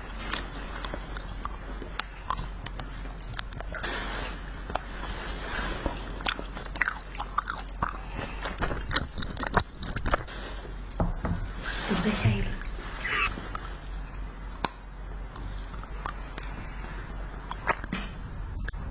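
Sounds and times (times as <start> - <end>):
candy being bitten and chewed: 0.0 - 5.1, 5.9 - 11.0, 17.4 - 17.9.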